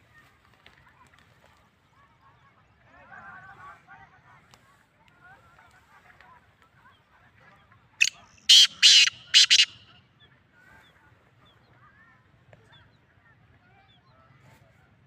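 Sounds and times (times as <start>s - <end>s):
bird squawking harshly: 8.0s - 9.8s
faint bird chirping: 8.0s - 12.1s.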